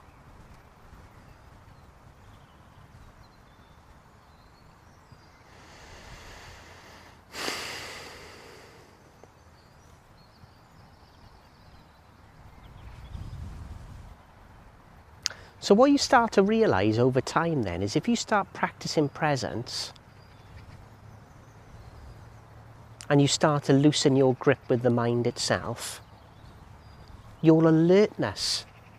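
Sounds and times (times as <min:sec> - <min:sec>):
person breathing: 0:05.5 - 0:09.1, 0:15.2 - 0:15.6.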